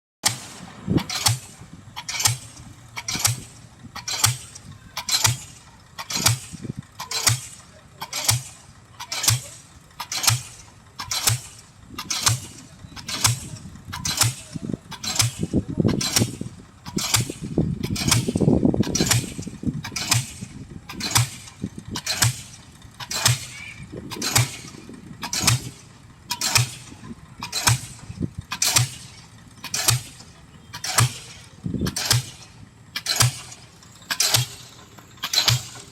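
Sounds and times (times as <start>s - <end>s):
pile-driving hammer impacts: 0.2s - 35.9s
low rumble: 11.4s - 35.9s.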